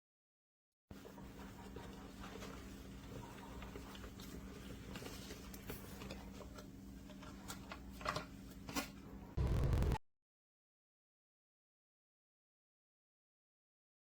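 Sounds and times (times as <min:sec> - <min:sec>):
short loud burst of noise: 0:09.4 - 0:10.0.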